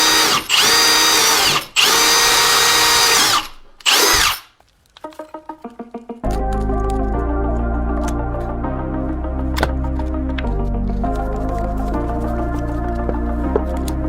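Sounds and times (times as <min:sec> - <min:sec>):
electric drill whining: 0:00.0 - 0:04.5
plucked string music: 0:05.0 - 0:14.0.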